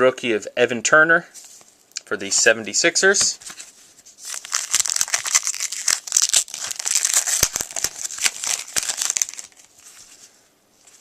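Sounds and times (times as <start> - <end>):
foil wrapper crinkling and tearing: 4.2 - 9.7.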